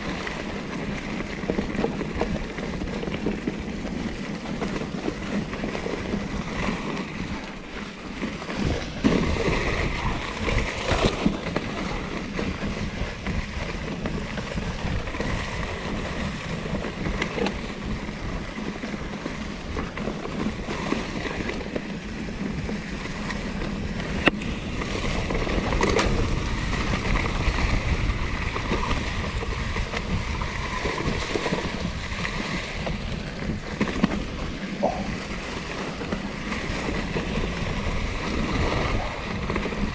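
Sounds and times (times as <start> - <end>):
bike rattling: 0.0 - 39.9
wind on microphone: 0.0 - 39.9
tyres rolling on dirt: 0.1 - 39.9.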